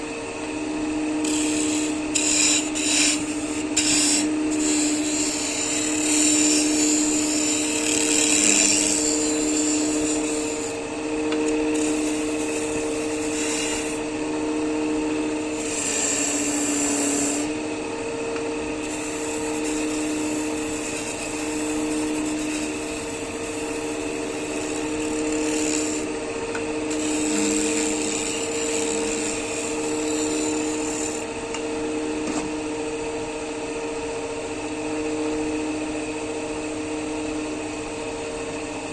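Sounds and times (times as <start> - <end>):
tool scraping wood: 1.2 - 14.0, 15.4 - 17.5, 18.8 - 26.1, 26.8 - 31.3.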